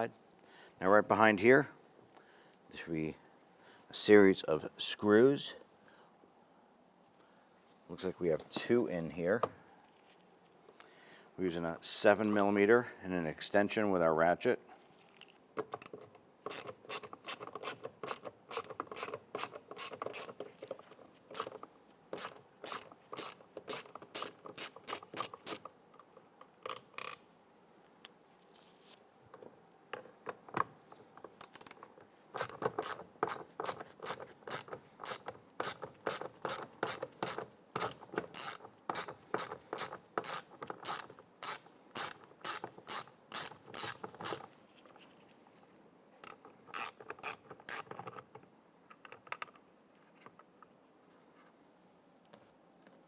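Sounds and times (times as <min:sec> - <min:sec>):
hand ratchet clicking: 0:15.8 - 0:20.5, 0:21.3 - 0:25.7, 0:31.3 - 0:44.5, 0:46.2 - 0:48.1.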